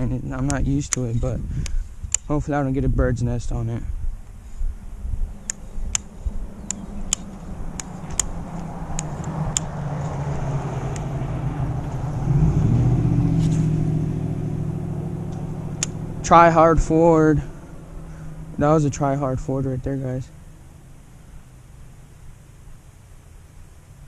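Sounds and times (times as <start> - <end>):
sharp clicks: 0.4 - 2.3, 5.4 - 10.2, 15.3 - 16.0
vehicle engine revving past: 4.8 - 22.8.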